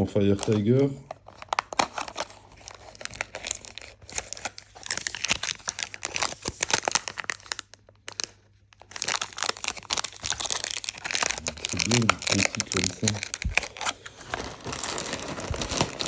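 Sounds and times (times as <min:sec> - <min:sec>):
plastic bags crinkling and tearing: 0:00.0 - 0:16.0.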